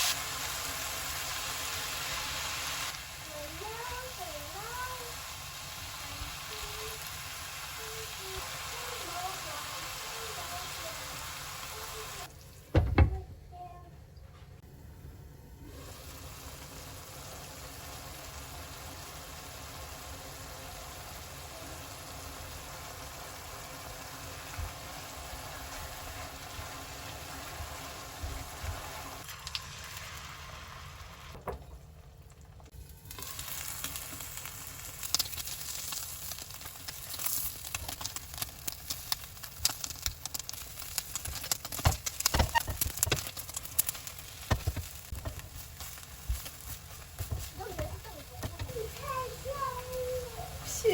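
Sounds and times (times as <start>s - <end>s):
food sizzling in hot oil: 0.0s - 12.4s, 15.6s - 31.4s, 32.7s - 50.9s
crackling oil with sharp pops: 29.2s - 29.7s, 32.3s - 49.0s.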